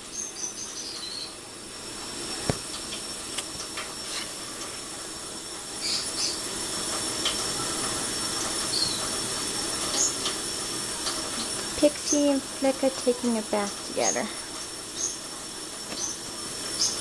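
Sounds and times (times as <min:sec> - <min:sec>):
birds chirping: 0:00.0 - 0:01.4, 0:05.8 - 0:06.5, 0:13.6 - 0:15.2, 0:15.9 - 0:16.2, 0:16.8 - 0:17.0.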